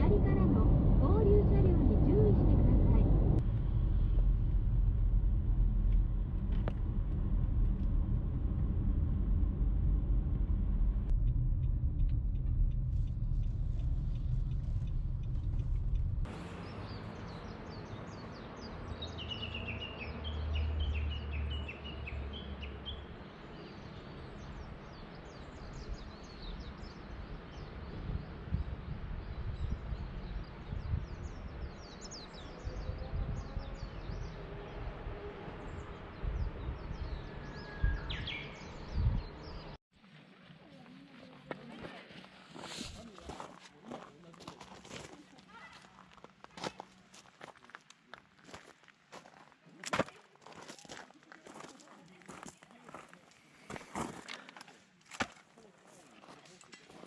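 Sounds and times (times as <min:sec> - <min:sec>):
low rumble of moving car: 0:00.0 - 0:21.5.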